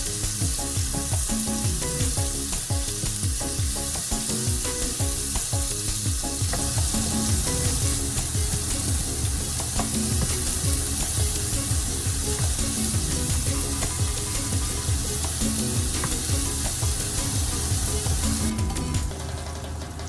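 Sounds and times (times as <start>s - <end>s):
food sizzling in hot oil: 0.0s - 19.1s
stirring in frying pan: 0.0s - 19.1s.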